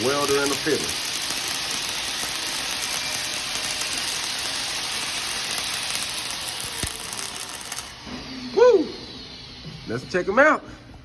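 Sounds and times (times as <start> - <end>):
welding arc crackling: 0.0 - 8.1.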